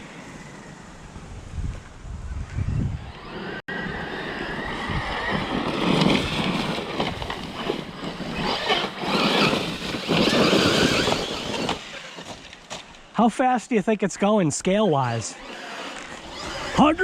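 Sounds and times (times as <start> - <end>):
electric motor whining: 2.7 - 13.0, 15.3 - 17.0
tyres rushing over ground: 3.1 - 13.2.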